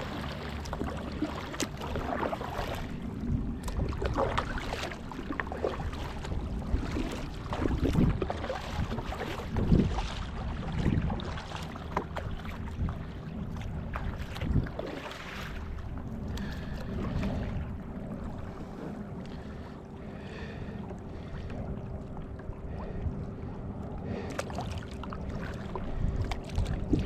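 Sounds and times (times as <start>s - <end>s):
paddle strokes splashing water: 0.0s - 27.0s
wind rumbling on microphone: 0.0s - 27.0s.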